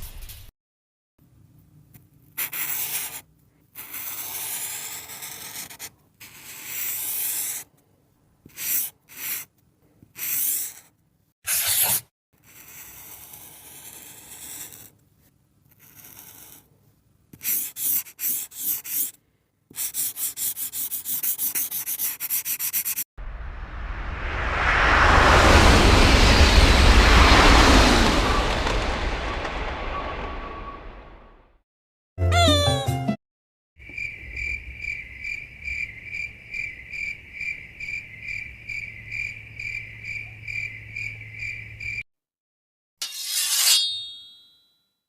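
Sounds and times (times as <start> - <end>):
highlighter scraping on paper: 2.4 - 7.7, 8.4 - 23.1.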